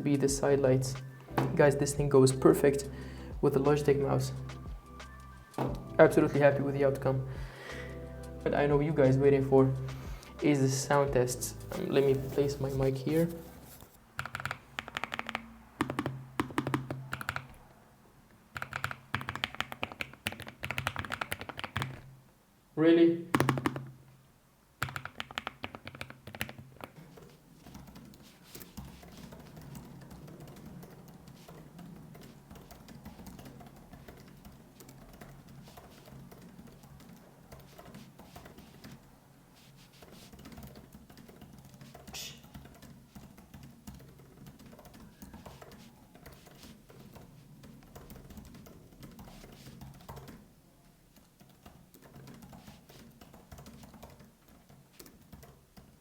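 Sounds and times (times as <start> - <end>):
faint music: 0.0 - 14.0
typing on computer keyboard: 9.1 - 17.6, 18.5 - 22.2, 23.3 - 24.0, 24.8 - 56.0.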